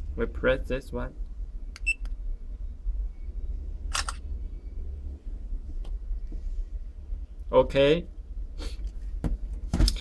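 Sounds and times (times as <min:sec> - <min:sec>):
camera shutter sound: 0:03.9 - 0:04.2.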